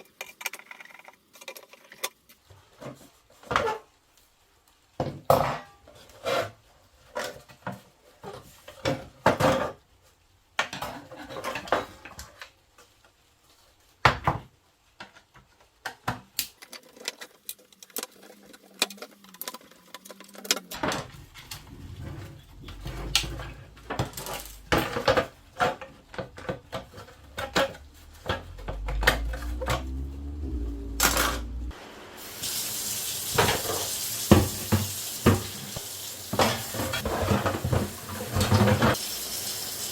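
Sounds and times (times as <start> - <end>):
plastic parts knocking in sink: 22.2 - 29.6
water running from tap: 32.1 - 39.9.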